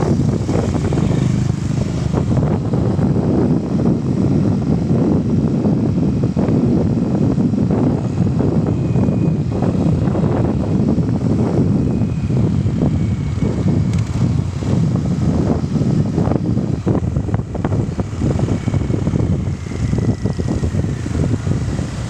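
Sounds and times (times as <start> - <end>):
vehicle engine rumble: 0.0 - 22.0
wind buffeting microphone: 0.0 - 22.0.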